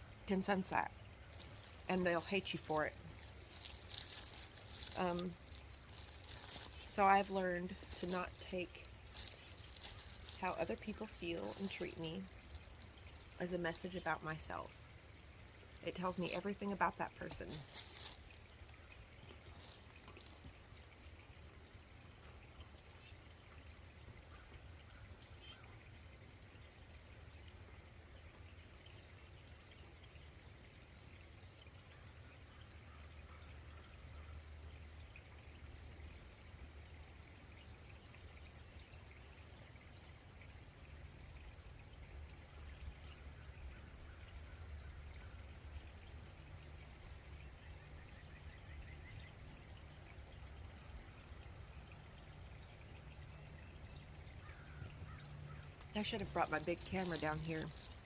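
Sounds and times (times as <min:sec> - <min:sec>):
low steady rumble: 0:00.0 - 0:32.3
faint trickling water: 0:00.0 - 0:58.0.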